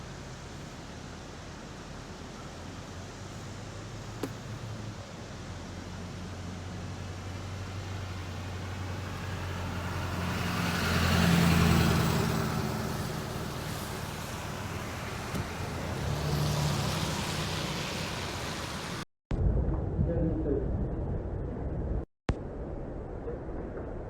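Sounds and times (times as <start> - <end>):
vehicles passing: 0.0 - 19.1
low engine hum: 0.0 - 24.0.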